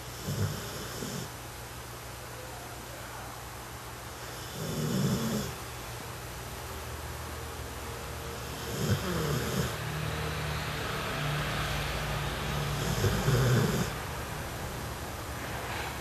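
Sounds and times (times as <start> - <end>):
puppy snoring: 0.0 - 1.4, 4.2 - 5.6, 8.4 - 9.9, 12.3 - 14.0.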